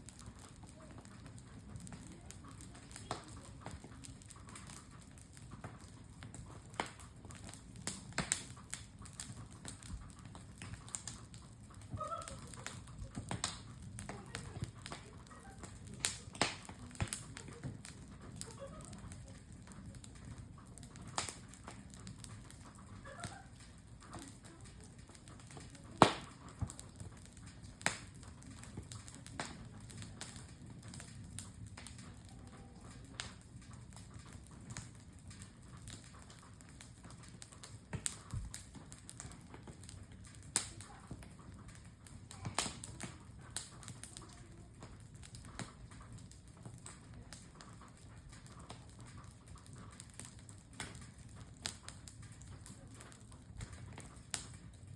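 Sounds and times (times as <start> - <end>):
campfire crackling: 0.0 - 54.9
fire pops and snaps: 0.0 - 54.9.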